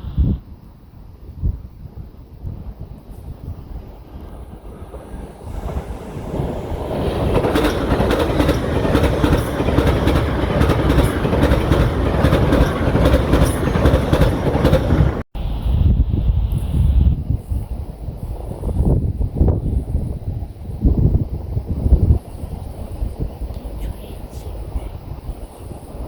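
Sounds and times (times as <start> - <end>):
train rumbling: 0.0 - 26.0
wheels clacking over rail joints: 4.1 - 15.2.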